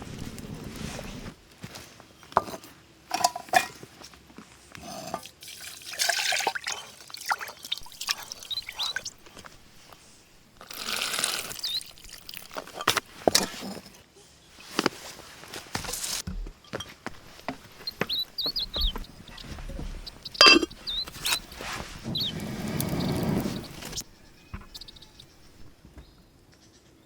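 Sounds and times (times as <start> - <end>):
water splashing: 5.5 - 13.2.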